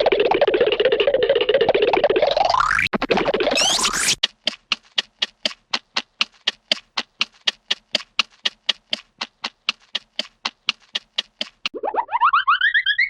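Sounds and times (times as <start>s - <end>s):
rapid cartoon footstep taps: 3.0s - 11.8s.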